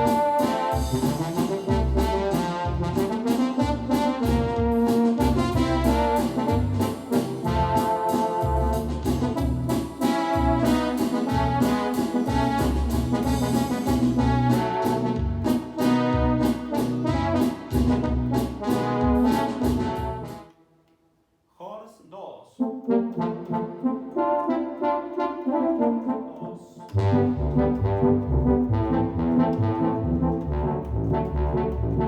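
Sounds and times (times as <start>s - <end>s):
steady beat and bass: 0.0s - 18.5s
synthesizer brass melody: 0.0s - 20.9s, 22.6s - 32.0s.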